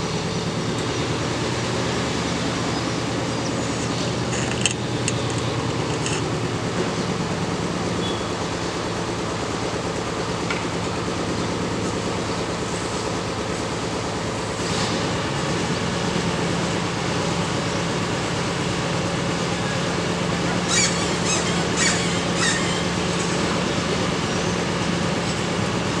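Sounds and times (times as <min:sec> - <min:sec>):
vehicle rumble in motion: 0:00.0 - 0:26.0
sharp clicks and squeals: 0:03.6 - 0:06.3.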